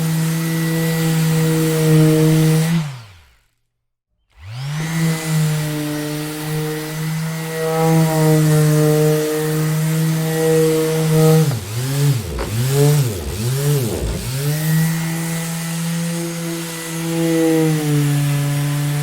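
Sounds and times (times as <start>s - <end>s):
electric orbital sander running: 4.4s - 19.0s.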